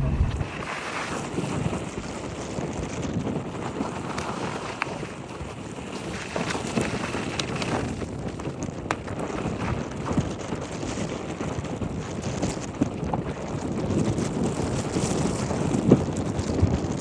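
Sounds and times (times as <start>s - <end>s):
road and wind noise: 0.0s - 0.8s.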